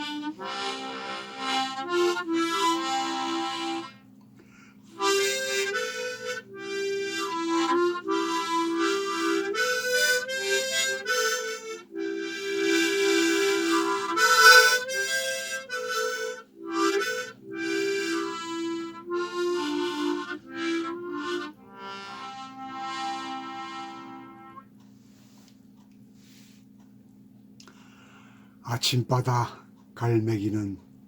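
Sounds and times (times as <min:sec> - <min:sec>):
reedy melody: 0:00.0 - 0:04.1, 0:04.9 - 0:24.8.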